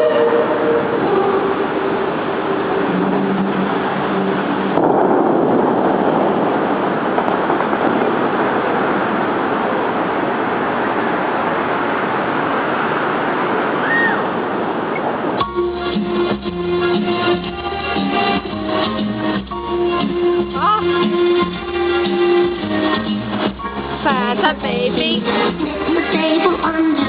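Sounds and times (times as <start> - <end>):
fountain water splashing: 0.0 - 27.0
guitar music: 15.4 - 27.0
person singing: 24.5 - 27.0.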